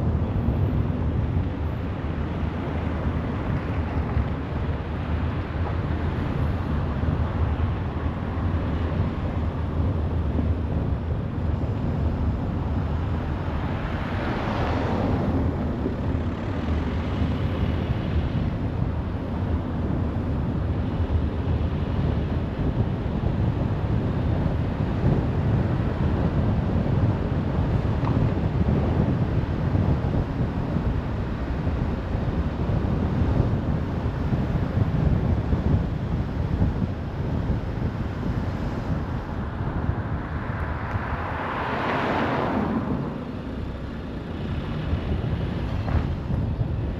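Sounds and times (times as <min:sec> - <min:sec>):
highway traffic rumble: 0:00.0 - 0:46.9
vehicle passing close by: 0:38.2 - 0:46.3.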